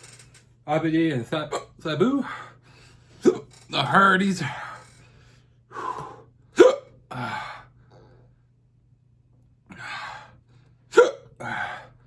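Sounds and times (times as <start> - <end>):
breathy exhales: 4.7 - 6.4
man hiccuping: 6.6 - 7.4, 10.9 - 11.7.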